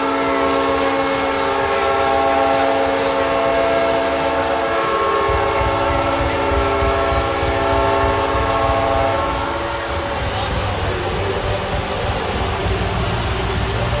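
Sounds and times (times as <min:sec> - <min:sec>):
goal horn blaring: 0:00.0 - 0:10.4.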